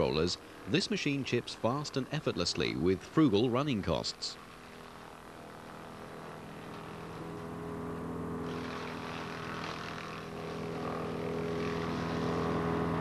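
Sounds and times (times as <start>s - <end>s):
diesel engine running: 0.0s - 13.0s
hissing crackling noise: 8.4s - 13.0s.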